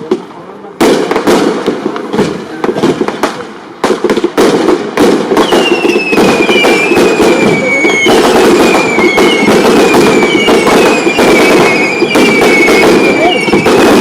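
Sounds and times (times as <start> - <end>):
fireworks crackling and banging: 0.0 - 14.0
high falling whistles: 5.5 - 13.6.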